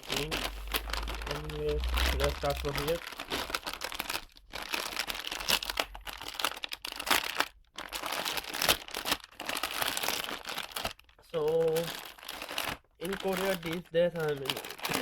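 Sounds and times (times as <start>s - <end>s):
packaging tearing and crinkling: 0.0s - 15.0s.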